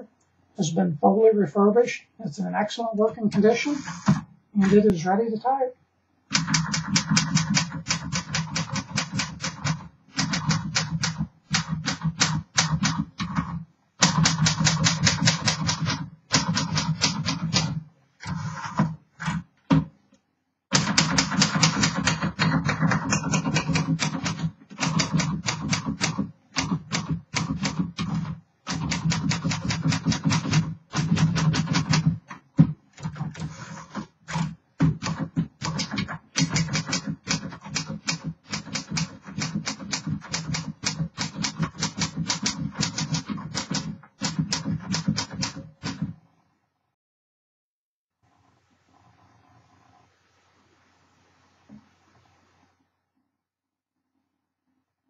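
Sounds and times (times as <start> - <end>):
manual typewriter key strikes: 6.3 - 13.4, 14.0 - 17.8, 20.7 - 32.3, 34.3 - 46.1.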